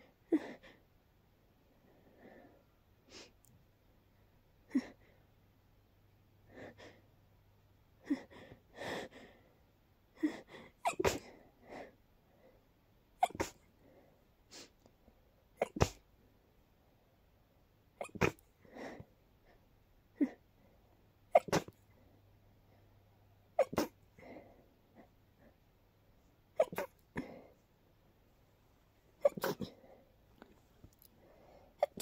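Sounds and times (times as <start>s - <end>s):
person sneezing: 10.8s - 11.3s, 13.2s - 13.6s, 15.6s - 16.0s, 18.0s - 18.4s, 21.3s - 21.8s, 23.6s - 24.0s, 26.6s - 27.3s, 29.2s - 29.8s, 31.8s - 32.0s
quick breaths: 31.1s - 31.8s.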